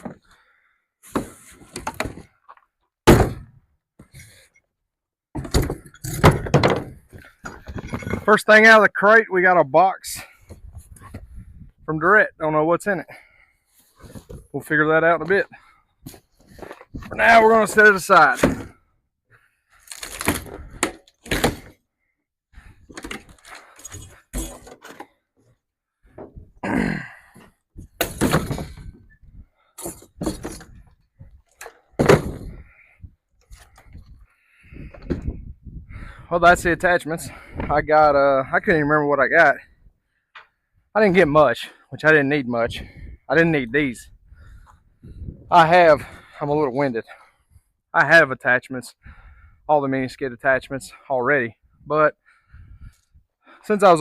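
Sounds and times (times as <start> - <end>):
wooden crate cracking and thudding: 3.0 - 3.6, 5.4 - 8.2, 19.8 - 21.8, 28.0 - 29.0, 31.7 - 32.6.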